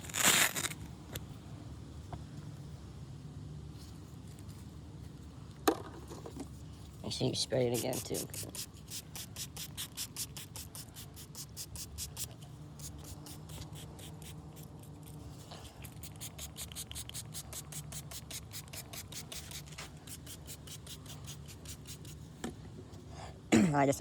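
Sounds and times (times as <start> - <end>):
sandpaper sanding plastic: 7.2 - 15.1, 15.7 - 22.2.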